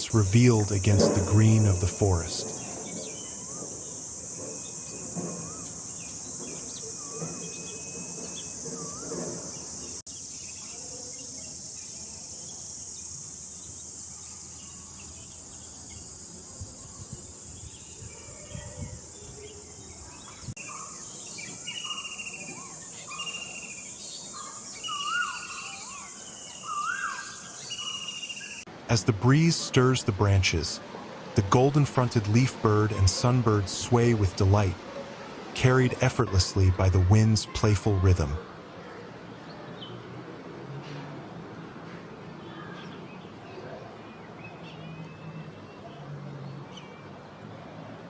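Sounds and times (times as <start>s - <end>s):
birds calling: 0.0s - 40.5s
high-pitched insect drone: 1.7s - 20.5s.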